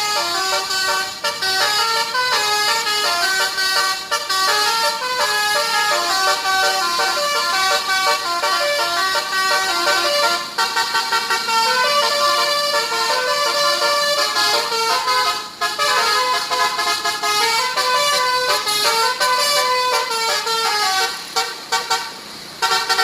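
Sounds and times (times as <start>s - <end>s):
bus melody horn playing tune: 0.0s - 23.0s.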